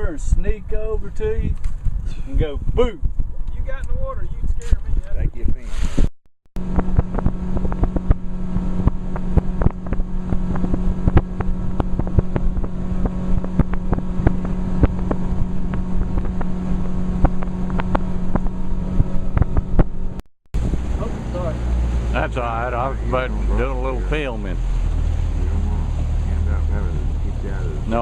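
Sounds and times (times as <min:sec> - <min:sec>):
boat motor running: 0:06.6 - 0:28.0.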